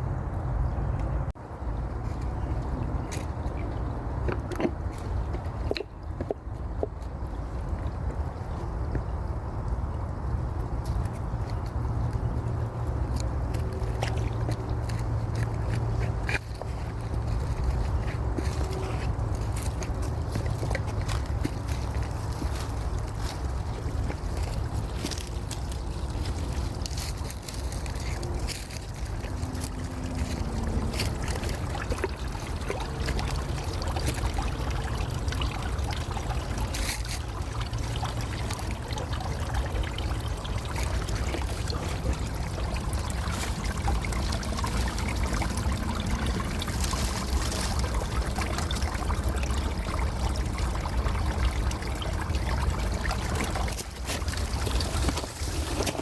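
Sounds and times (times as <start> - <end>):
wind rumbling on microphone: 0.0 - 56.0.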